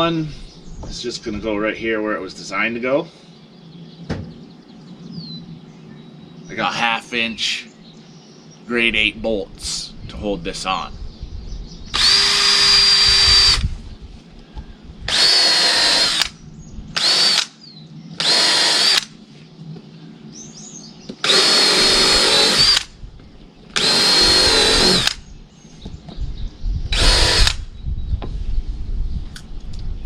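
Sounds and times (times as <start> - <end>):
power drill whining: 11.9 - 13.6, 15.1 - 16.4, 17.0 - 17.5, 18.2 - 19.1, 21.2 - 22.9, 23.8 - 25.2, 26.9 - 27.7.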